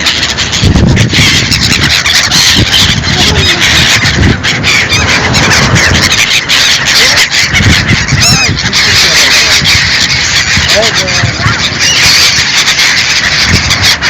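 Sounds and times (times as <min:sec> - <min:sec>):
flock of birds honking and squealing: 0:00.0 - 0:14.0
low rumble: 0:00.8 - 0:08.6.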